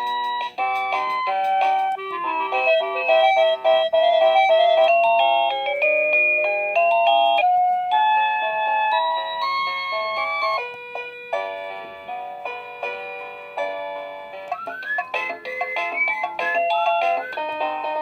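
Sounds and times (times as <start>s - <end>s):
doorbell chime tune: 2.4s - 10.7s, 14.5s - 18.0s.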